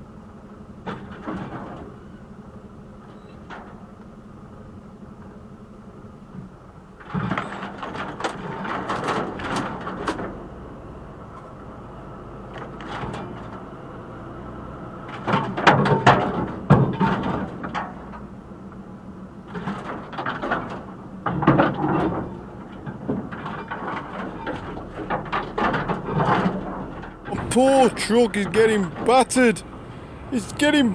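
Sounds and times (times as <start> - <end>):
truck engine running: 0.0 - 30.9
branches scraping against truck: 19.5 - 30.9.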